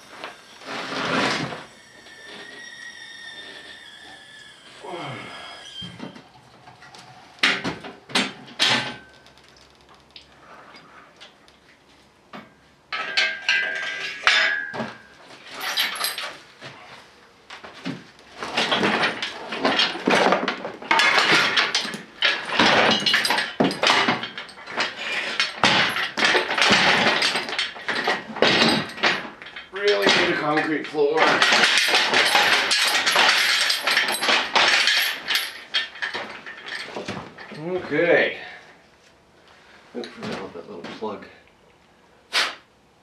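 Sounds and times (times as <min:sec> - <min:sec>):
metal tools clanking: 0:12.4 - 0:16.4, 0:18.5 - 0:38.2.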